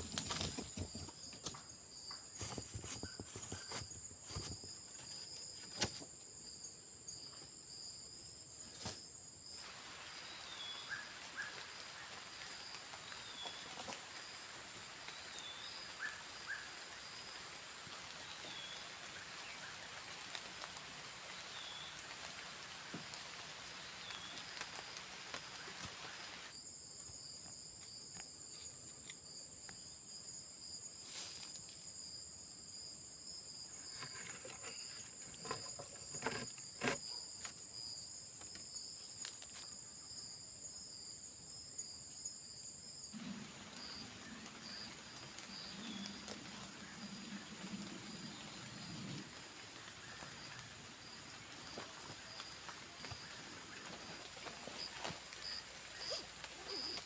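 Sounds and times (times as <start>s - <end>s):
forest insects droning: 0.0s - 57.0s
broad hiss: 9.6s - 26.6s.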